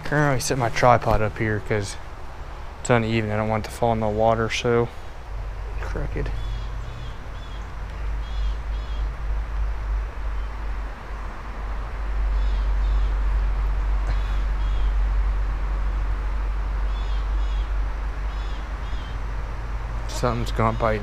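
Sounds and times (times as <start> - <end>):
low rumble: 3.4 - 21.0
bird calling high notes: 6.2 - 9.1.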